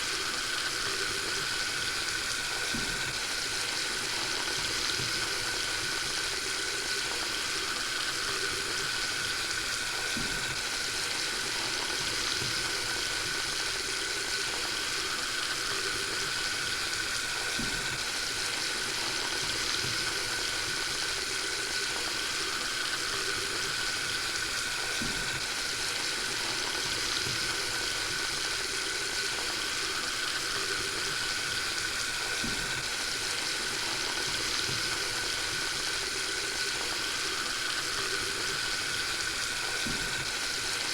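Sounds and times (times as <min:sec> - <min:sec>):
tap running into sink: 0:39.8 - 0:40.3.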